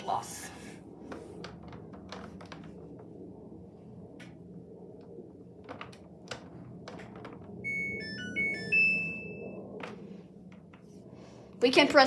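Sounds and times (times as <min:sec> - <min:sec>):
electronic beeping chime tune: 0:07.7 - 0:09.5.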